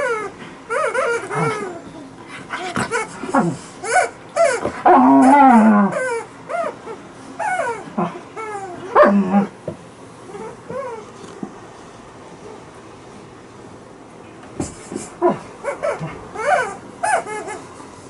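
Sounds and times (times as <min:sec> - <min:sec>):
dog whining calls: 0:00.0 - 0:09.6, 0:10.3 - 0:11.3, 0:15.2 - 0:17.7.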